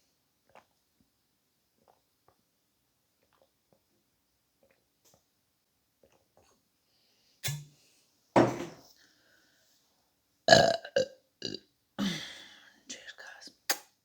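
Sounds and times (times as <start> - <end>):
woman burping: 10.5 - 12.3.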